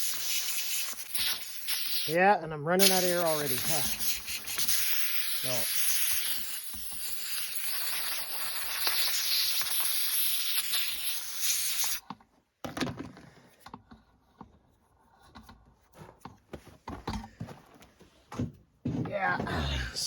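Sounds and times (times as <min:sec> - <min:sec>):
air blowgun hissing: 0:00.0 - 0:12.0.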